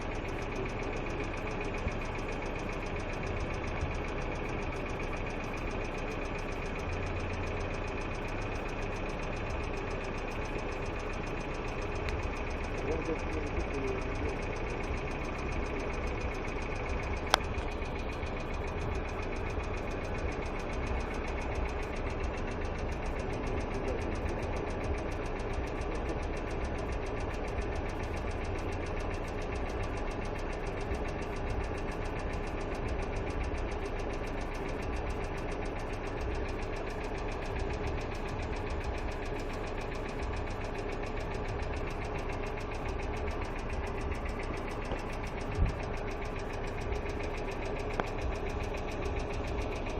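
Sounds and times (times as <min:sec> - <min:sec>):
car engine idling with ticking: 0:00.0 - 0:49.9
sharp click: 0:29.5 - 0:49.9.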